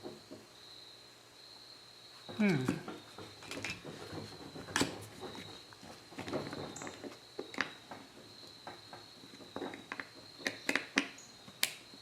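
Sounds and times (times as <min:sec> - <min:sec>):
small clicks and taps: 0:03.2 - 0:11.8.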